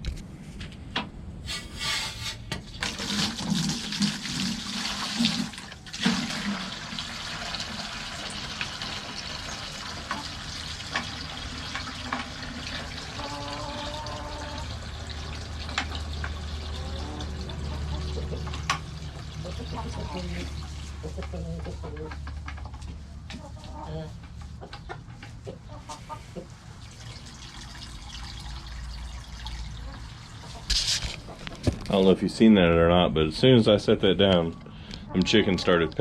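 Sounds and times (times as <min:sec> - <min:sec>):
water running into bucket: 0:02.7 - 0:20.9, 0:26.7 - 0:30.4.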